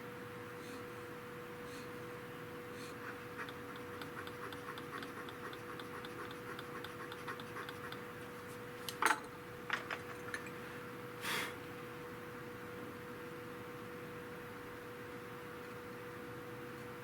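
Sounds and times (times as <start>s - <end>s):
steady hum: 0.0s - 9.6s
light rapid ticking: 3.4s - 8.1s.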